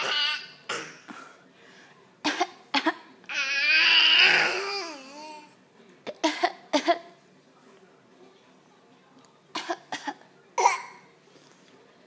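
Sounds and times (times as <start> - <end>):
child fake coughing: 0.0 - 1.3, 9.6 - 11.1.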